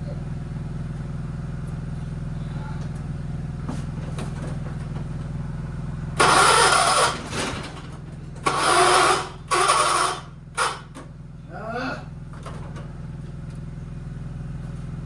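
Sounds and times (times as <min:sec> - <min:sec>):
lawn tractor engine cranking: 0:06.2 - 0:11.0.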